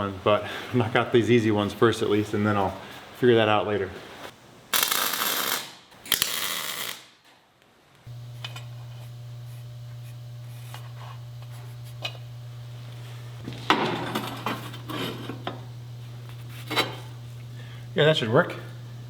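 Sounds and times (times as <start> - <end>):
steady low hum: 8.1 - 19.0
metal clattering and scraping: 13.4 - 15.6.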